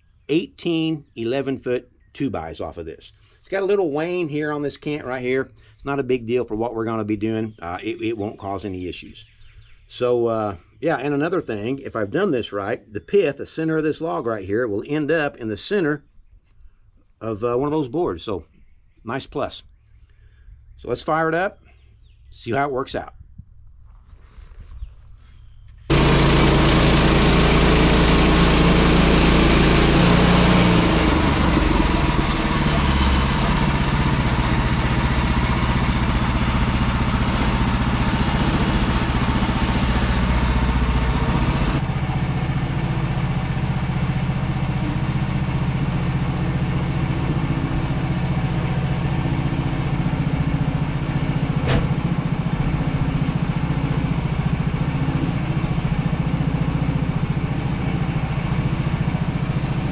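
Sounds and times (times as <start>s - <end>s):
band saw blade cutting wood: 25.9s - 41.8s
gas engine running: 25.9s - 59.9s.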